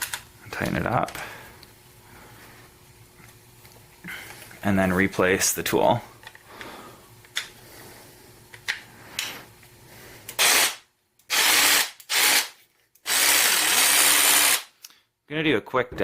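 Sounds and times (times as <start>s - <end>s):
jigsaw motor running: 11.3s - 12.5s, 13.1s - 14.6s.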